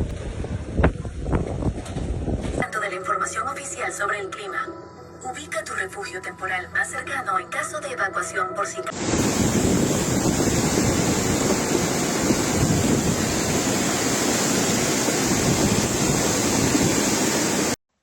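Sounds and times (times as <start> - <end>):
wind buffeting microphone: 0.0 - 2.6, 9.0 - 17.7
hurricane wind and water rushing: 0.0 - 2.7, 8.9 - 17.8.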